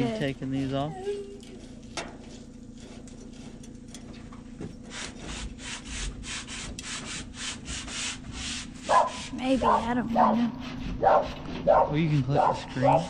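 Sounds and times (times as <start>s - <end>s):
sanding sheet metal: 4.9s - 13.0s.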